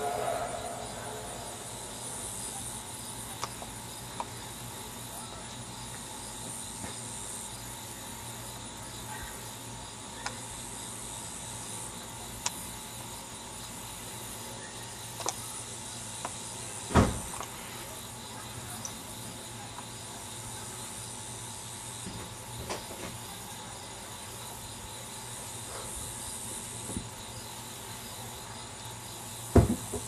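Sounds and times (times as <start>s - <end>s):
low hum: 0.0s - 2.8s
outdoor background hiss: 0.0s - 30.0s.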